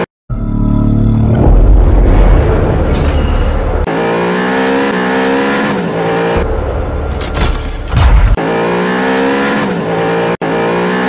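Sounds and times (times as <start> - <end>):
heavy low rumble: 0.8 - 3.9.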